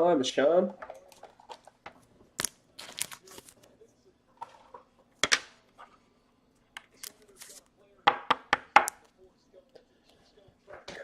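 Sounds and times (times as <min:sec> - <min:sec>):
cards rustling and sliding: 0:02.4 - 0:03.7, 0:06.9 - 0:07.6.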